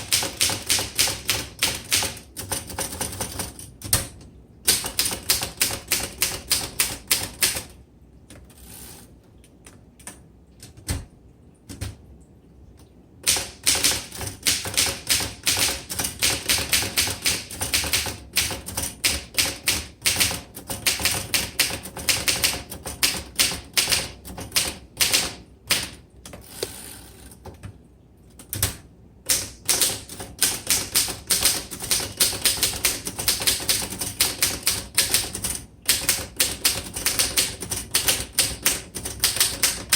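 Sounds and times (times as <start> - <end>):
typewriter key clacks: 13.2 - 26.0, 28.4 - 39.9.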